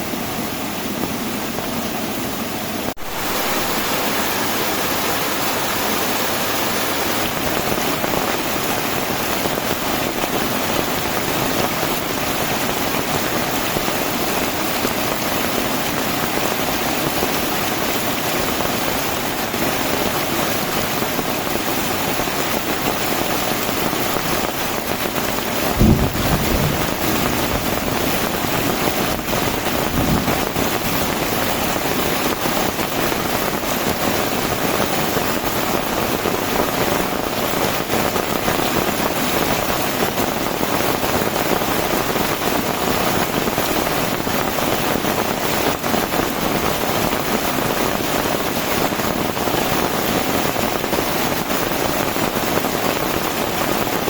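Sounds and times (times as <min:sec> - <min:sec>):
heavy rain pouring: 0:00.0 - 0:54.0
low thumps: 0:25.7 - 0:30.8.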